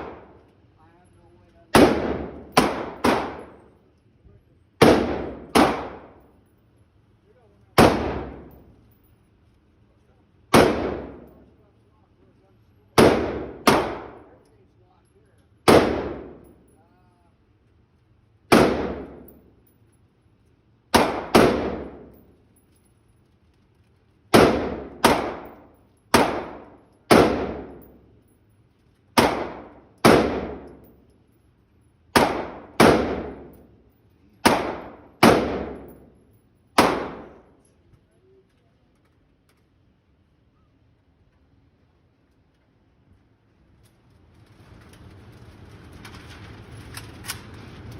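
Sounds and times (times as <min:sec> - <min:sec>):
gunshots with ringing decay: 0:00.0 - 0:00.4, 0:01.7 - 0:03.7, 0:04.8 - 0:06.3, 0:07.8 - 0:08.7, 0:10.5 - 0:11.5, 0:13.0 - 0:14.4, 0:15.7 - 0:16.6, 0:18.5 - 0:19.5, 0:20.9 - 0:22.3, 0:24.3 - 0:28.0, 0:29.2 - 0:31.0, 0:32.1 - 0:33.8, 0:34.4 - 0:37.6.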